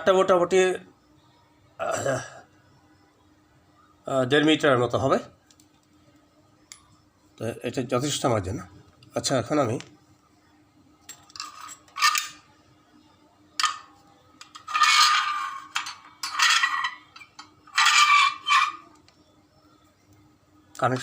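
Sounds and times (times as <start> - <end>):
plastic and metal scraping: 14.4 - 18.9.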